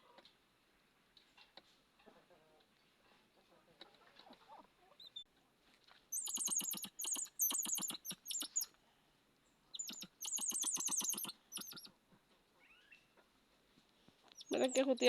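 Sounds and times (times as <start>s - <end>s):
hutia squeaking: 6.1s - 8.7s, 9.7s - 12.0s, 14.3s - 15.0s.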